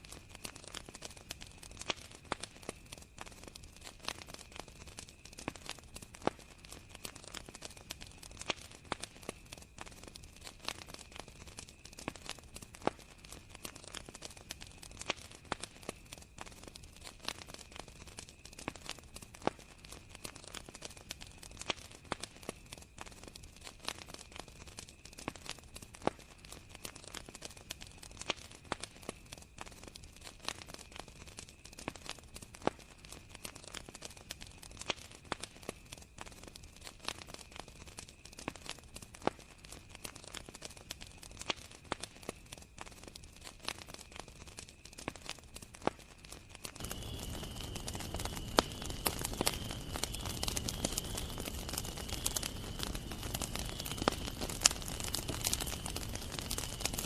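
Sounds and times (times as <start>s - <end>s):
campfire crackling and popping: 0.0s - 57.0s
crickets trilling: 46.8s - 57.0s.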